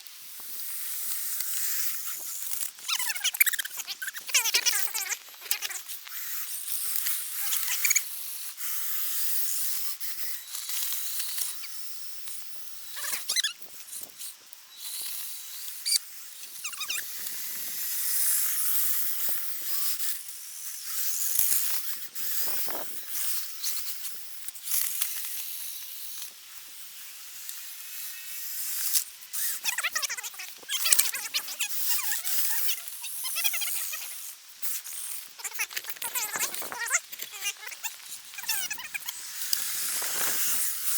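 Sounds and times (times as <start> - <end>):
toy truck electric motors whining: 0.3 - 40.9.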